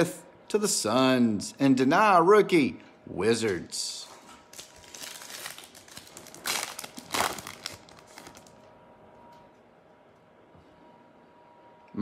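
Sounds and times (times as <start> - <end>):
wrapper crinkling and tearing: 4.3 - 8.7.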